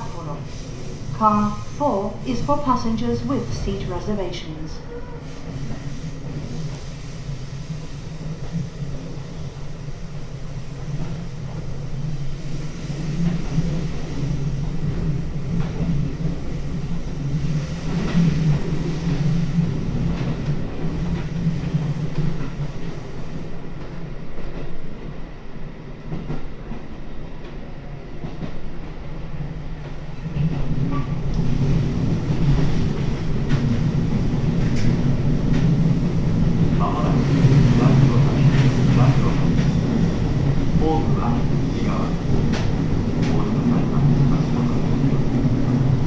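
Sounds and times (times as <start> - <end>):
train wheels rumbling: 0.0 - 46.0
rail-joint clicks: 5.4 - 7.2, 29.8 - 46.0.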